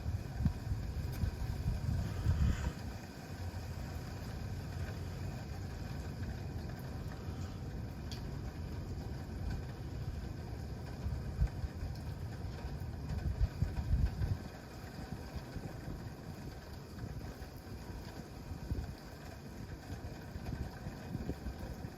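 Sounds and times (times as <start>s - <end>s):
campfire crackling: 0.0s - 21.9s
low fire rumble: 0.0s - 21.9s.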